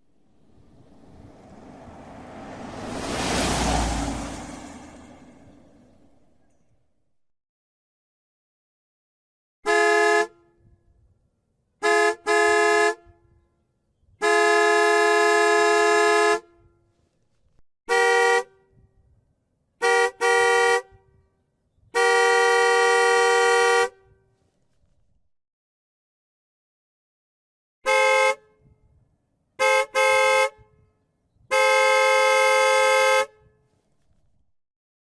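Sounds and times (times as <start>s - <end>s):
dual-tone car horn honking: 0.2s - 6.2s, 9.7s - 10.5s, 11.8s - 13.1s, 14.2s - 16.6s, 17.9s - 18.7s, 19.8s - 21.0s, 22.0s - 24.1s, 27.9s - 28.6s, 29.6s - 30.6s, 31.5s - 33.5s.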